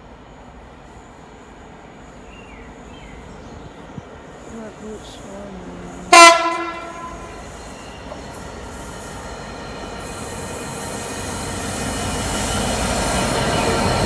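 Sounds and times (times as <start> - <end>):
train rail noise: 0.0 - 14.0
train horn blast: 5.8 - 8.2.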